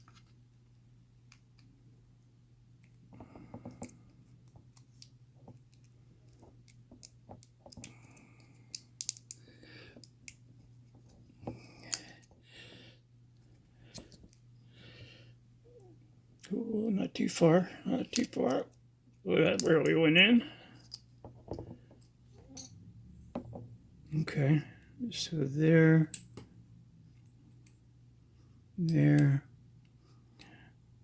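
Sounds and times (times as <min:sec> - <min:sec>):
steady low hum: 0:00.0 - 0:31.0
metal tools clicking on padlock: 0:06.6 - 0:09.4.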